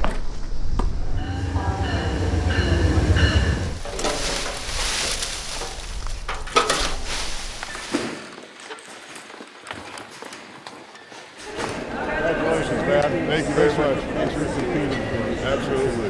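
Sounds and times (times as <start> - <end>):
train passing: 0.7 - 6.2, 11.8 - 16.0
steady high tones: 1.1 - 3.9
train rattling clatter: 1.1 - 7.7.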